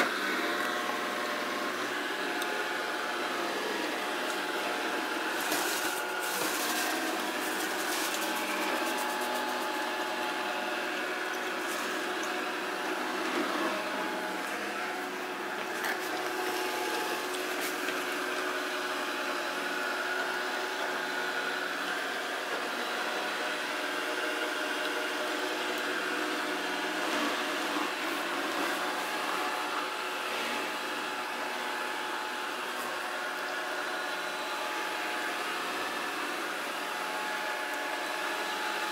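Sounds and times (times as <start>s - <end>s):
robot vacuum motor whir: 3.2s - 10.2s.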